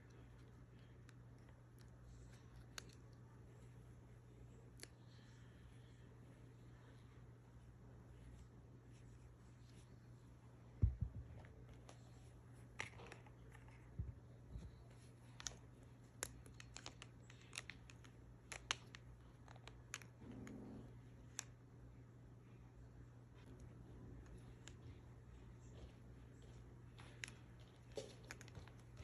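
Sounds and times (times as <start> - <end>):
toy packaging clicks and rustles: 14.9 - 20.2.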